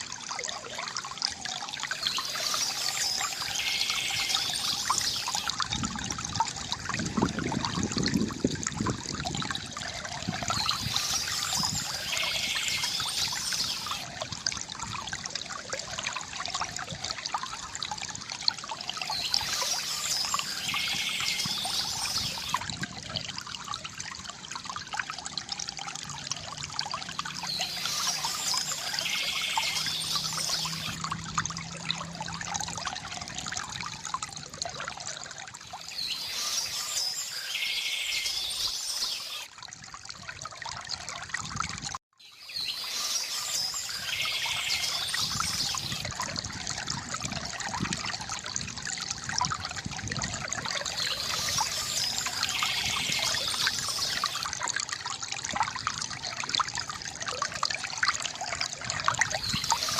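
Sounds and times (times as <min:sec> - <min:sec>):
stream water trickling: 0:00.0 - 0:59.9
bird singing: 0:01.9 - 0:05.5, 0:10.4 - 0:14.0, 0:19.0 - 0:22.6, 0:27.4 - 0:31.0, 0:35.7 - 0:39.5, 0:42.2 - 0:46.0, 0:50.8 - 0:54.5.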